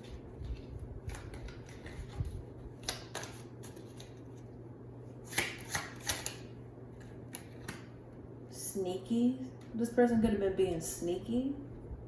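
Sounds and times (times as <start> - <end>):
cards slapping and sliding: 0.0 - 4.4, 5.2 - 7.9.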